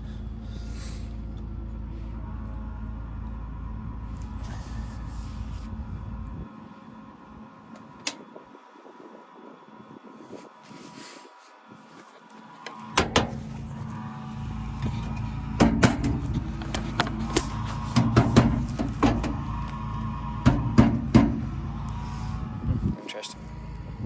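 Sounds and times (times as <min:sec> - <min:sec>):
battery charger humming: 0:12.6 - 0:20.7
sharp clicks and knocks: 0:15.6 - 0:19.4.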